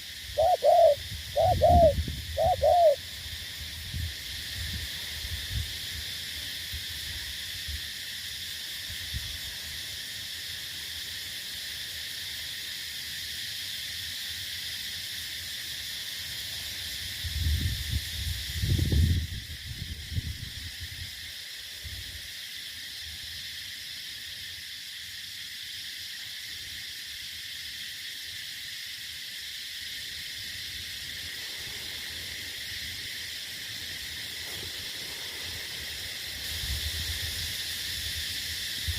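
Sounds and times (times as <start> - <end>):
insects chirring: 0.0 - 38.9
dove cooing: 0.4 - 3.0.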